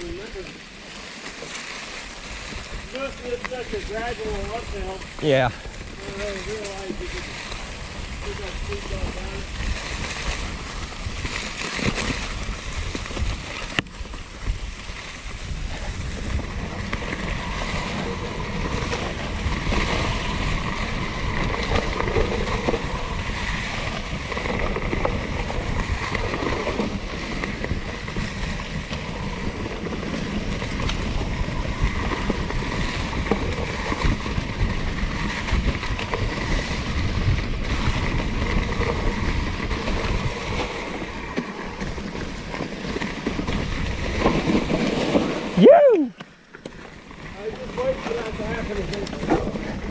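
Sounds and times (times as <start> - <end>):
bike tyres rolling on dirt: 0.0 - 49.9
wind noise on microphone: 2.1 - 46.2, 46.9 - 49.9.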